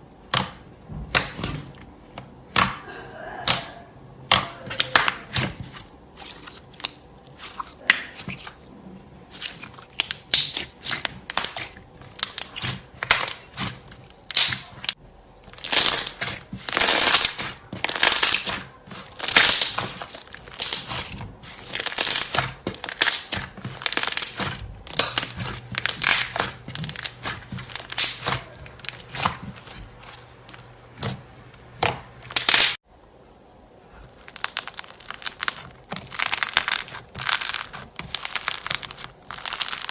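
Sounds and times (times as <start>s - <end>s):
slime crackling and popping: 9.3s - 32.8s, 34.1s - 39.9s.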